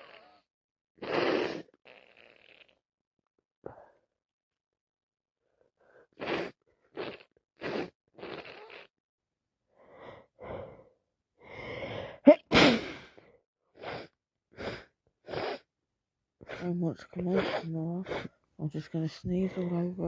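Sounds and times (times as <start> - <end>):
woman gasping breaths: 9.8 - 13.3
woman sneezing loudly: 12.3 - 13.1, 16.5 - 18.3.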